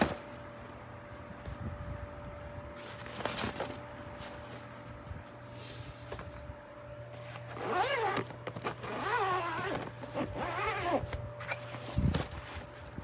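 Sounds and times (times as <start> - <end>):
suitcase zipper rasping: 7.3 - 12.7.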